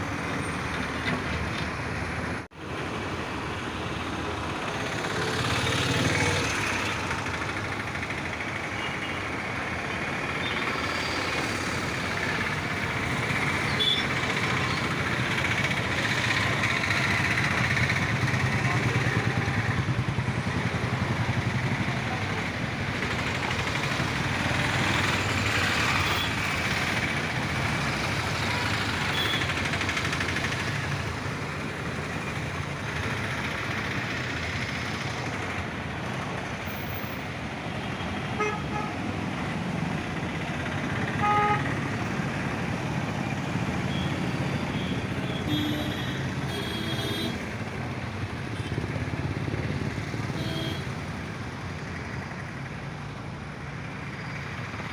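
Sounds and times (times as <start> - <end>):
diesel engine humming: 0.0 - 54.9
vehicle horns tooting: 13.7 - 14.1, 38.3 - 39.0, 41.2 - 41.7, 43.9 - 47.4, 50.3 - 50.9.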